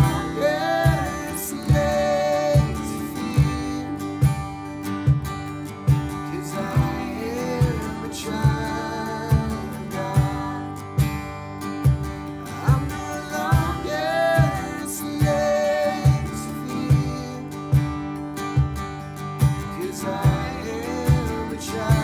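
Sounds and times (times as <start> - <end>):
acoustic guitar: 0.0 - 22.0.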